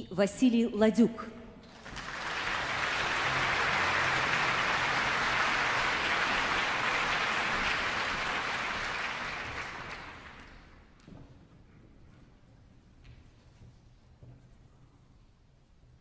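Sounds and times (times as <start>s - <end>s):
audience applauding: 1.6s - 10.9s.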